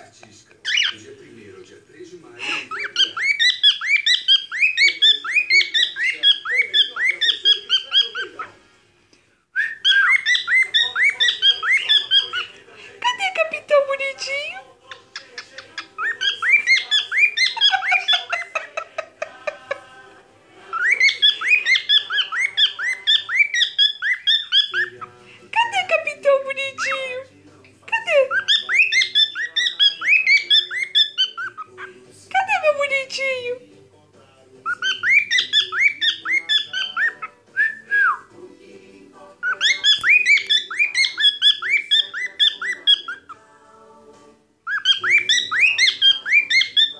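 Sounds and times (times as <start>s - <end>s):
cockatiel whistling song: 0.6s - 1.0s, 2.5s - 8.4s, 9.6s - 12.6s, 15.8s - 18.6s, 20.7s - 25.2s, 28.3s - 31.9s, 34.6s - 38.3s, 39.4s - 43.4s, 44.6s - 46.9s.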